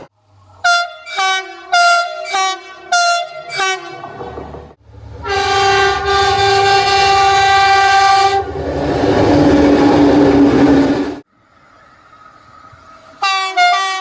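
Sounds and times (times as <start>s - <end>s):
train rumbling: 0.0s - 13.8s
train horn blast: 0.6s - 4.4s, 5.1s - 8.6s, 13.2s - 14.0s.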